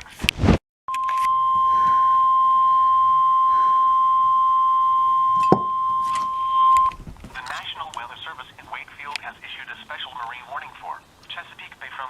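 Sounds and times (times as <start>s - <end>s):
steady alarm tone: 0.9s - 7.0s.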